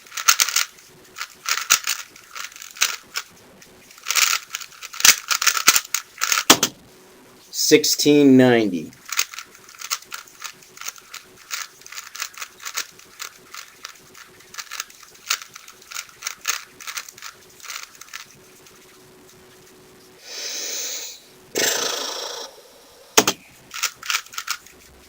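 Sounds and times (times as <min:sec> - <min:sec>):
plastic cube layers clicking: 0:00.0 - 0:03.3, 0:03.9 - 0:06.8, 0:08.9 - 0:18.8, 0:23.2 - 0:24.8
short hiss: 0:20.2 - 0:23.3.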